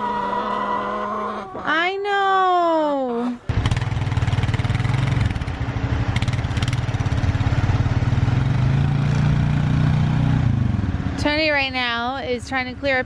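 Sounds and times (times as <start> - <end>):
atv engine running: 3.5 - 13.0.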